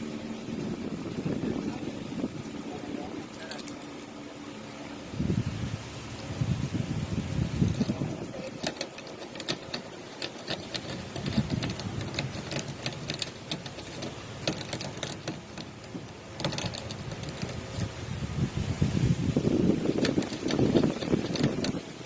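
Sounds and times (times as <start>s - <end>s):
lock pick clicking in a lock: 7.7s - 17.9s.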